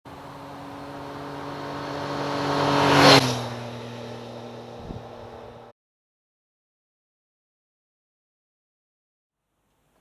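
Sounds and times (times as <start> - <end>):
vehicle engine passing by: 0.1 - 5.7.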